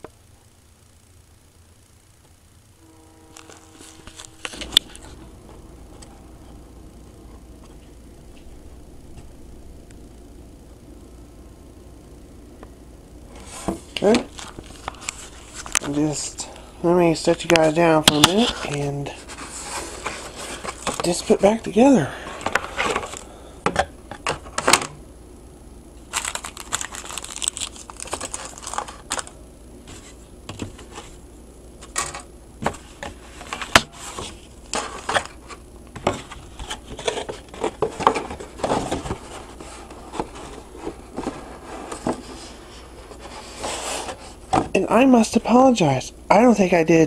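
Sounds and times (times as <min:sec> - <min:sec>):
plastic bags crinkling: 0:26.0 - 0:29.4.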